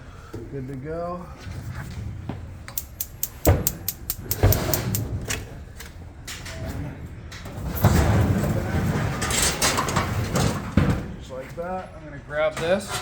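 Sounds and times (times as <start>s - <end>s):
electronic igniter clicking: 2.7s - 5.4s
sheet-metal grill parts rattling: 2.8s - 5.2s.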